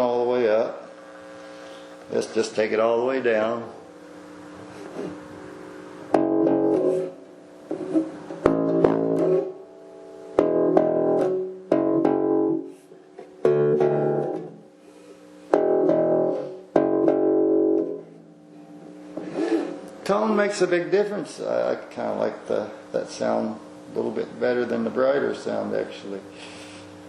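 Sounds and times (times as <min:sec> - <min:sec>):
plucked electric bass notes: 0:05.0 - 0:07.2, 0:07.8 - 0:14.7, 0:15.5 - 0:18.4.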